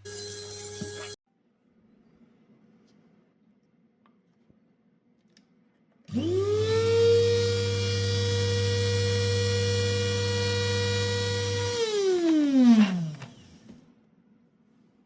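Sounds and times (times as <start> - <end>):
electric blade grinder motor whining: 6.1 - 13.6.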